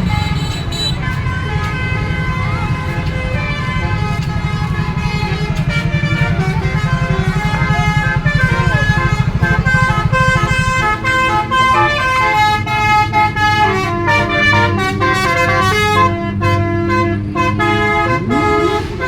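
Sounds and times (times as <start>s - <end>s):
fast throbbing low note: 0.0s - 16.6s
bus musical horn melody: 0.0s - 19.0s.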